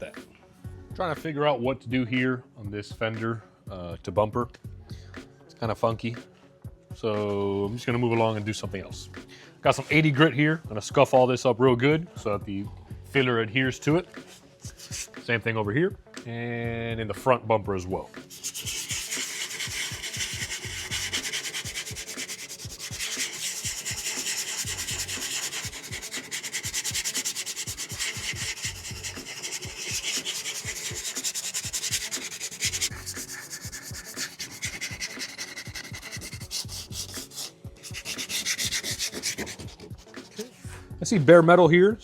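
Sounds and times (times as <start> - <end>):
sandpaper scuffing metal: 14.2 - 15.2, 18.2 - 40.7.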